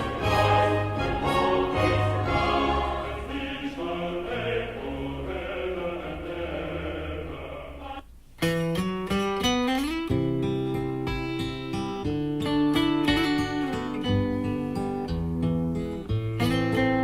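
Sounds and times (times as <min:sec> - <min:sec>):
acoustic guitar strumming: 0:00.0 - 0:03.5
orchestral music with choir: 0:00.0 - 0:08.0.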